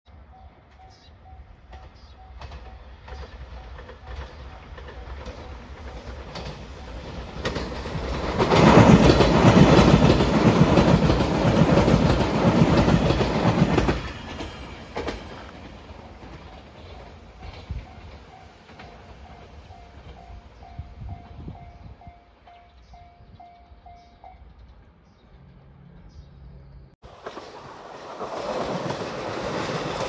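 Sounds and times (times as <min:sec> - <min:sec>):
train wheels clattering over rails: 0:01.7 - 0:20.3, 0:27.1 - 0:30.0.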